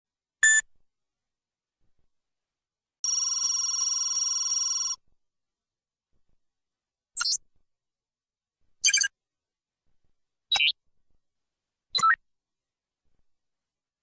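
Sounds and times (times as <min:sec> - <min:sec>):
telephone bell ringing: 0:03.0 - 0:05.0.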